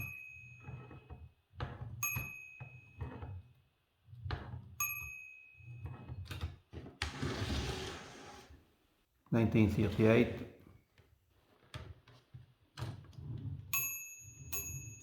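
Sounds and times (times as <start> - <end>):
typewriter bell ding: 2.0 - 3.1, 13.8 - 15.0.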